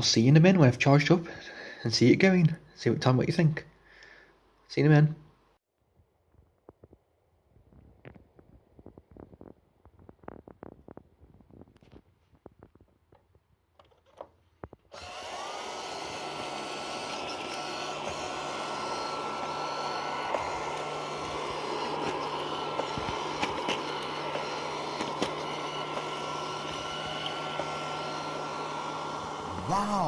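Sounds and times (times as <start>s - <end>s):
robot vacuum motor whine: 14.9s - 30.0s.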